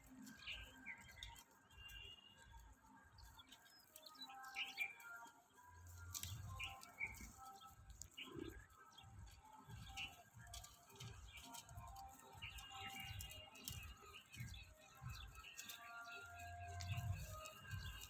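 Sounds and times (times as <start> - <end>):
small birds chirping: 0.0 - 18.0.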